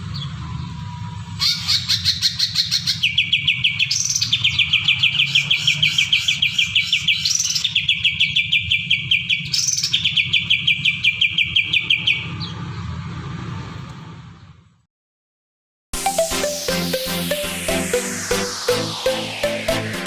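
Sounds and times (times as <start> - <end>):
low hum: 16.1 - 20.0.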